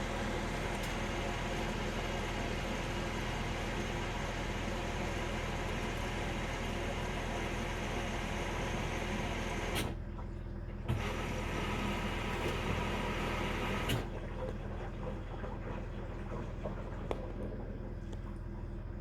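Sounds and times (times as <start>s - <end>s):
washing machine humming: 0.0s - 19.0s.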